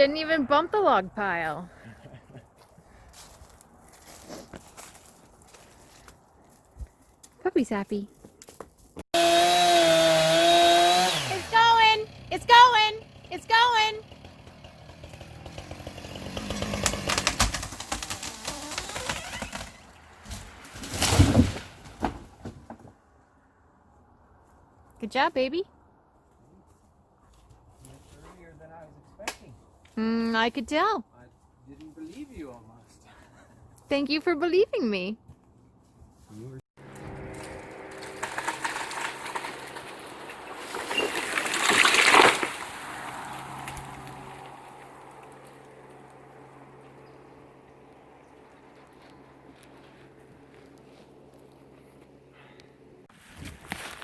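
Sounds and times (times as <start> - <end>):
chainsaw idling: 13.0 - 13.3, 14.0 - 19.7, 36.8 - 41.5
crash of limbs and leaves: 15.8 - 22.8, 36.8 - 46.4, 53.1 - 54.0
wood cracking and snapping: 16.5 - 19.9, 37.0 - 46.2
heavy thud of falling tree: 16.7 - 22.9.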